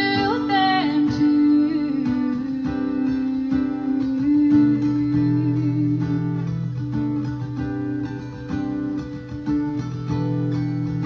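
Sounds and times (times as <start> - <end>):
guitar strumming chords: 0.0 - 11.0.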